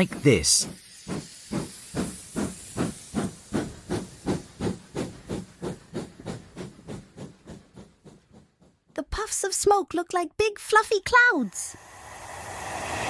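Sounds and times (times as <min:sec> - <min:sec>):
steam locomotive chuffing: 0:00.0 - 0:09.5.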